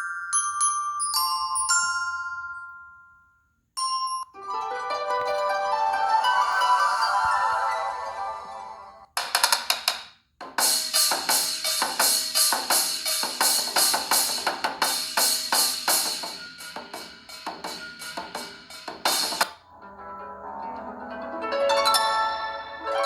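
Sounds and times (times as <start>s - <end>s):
percussive ringtone: 5.1s - 8.8s.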